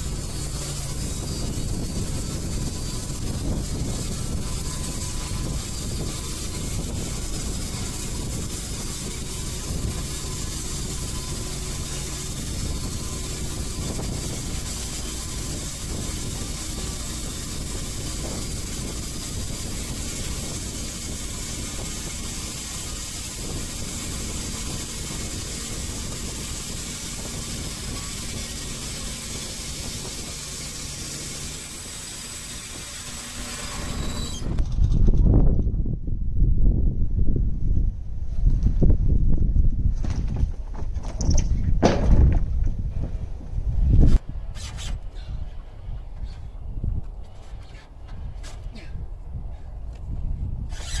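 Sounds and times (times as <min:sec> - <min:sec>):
bandsaw hissing: 0:00.0 - 0:34.6, 0:43.0 - 0:45.6, 0:50.7 - 0:51.0.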